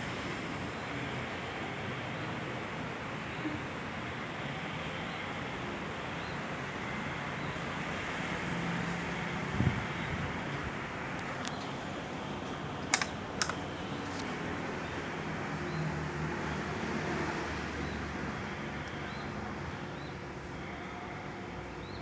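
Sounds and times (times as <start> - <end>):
sharp clicks: 12.8 - 14.2.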